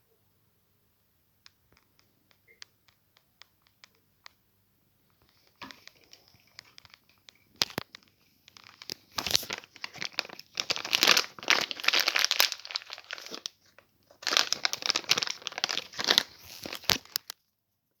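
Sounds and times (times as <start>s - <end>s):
treat bag crinkling: 5.4s - 17.4s.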